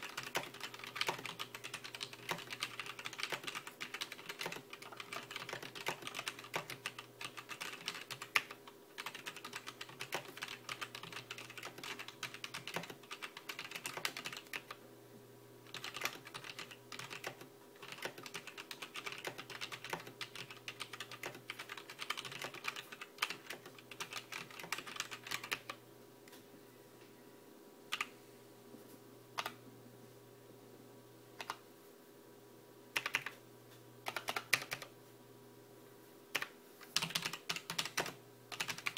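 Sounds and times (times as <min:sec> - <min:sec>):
typing on mechanical keyboard: 0:00.0 - 0:14.8, 0:15.7 - 0:25.8, 0:31.4 - 0:31.6, 0:33.0 - 0:33.4, 0:34.0 - 0:34.9, 0:36.4 - 0:38.9.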